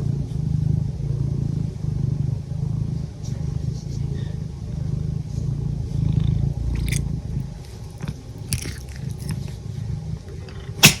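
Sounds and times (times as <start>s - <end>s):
cat purring: 1.8s - 10.7s.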